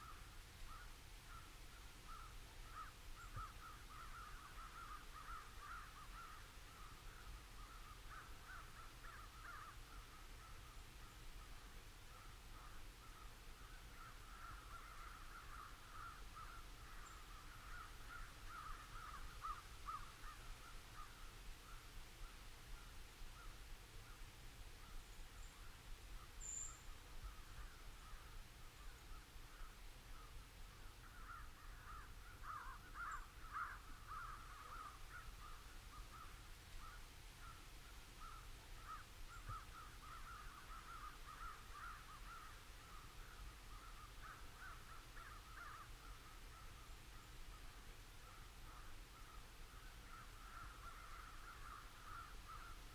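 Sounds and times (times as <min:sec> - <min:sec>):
distant crows cawing: 0:00.0 - 0:10.8, 0:12.1 - 0:21.8, 0:27.3 - 0:37.6, 0:38.2 - 0:47.3, 0:48.2 - 0:52.9
small bird high chirps: 0:26.4 - 0:26.9.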